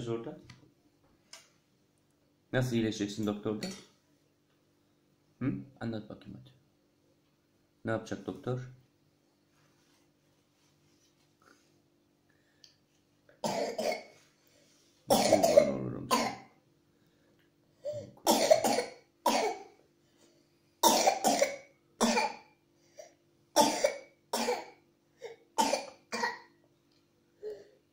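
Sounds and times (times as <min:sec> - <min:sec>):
girl coughing harshly: 0:13.4 - 0:14.1, 0:15.1 - 0:16.5, 0:17.9 - 0:19.7, 0:20.8 - 0:22.6, 0:23.6 - 0:26.5.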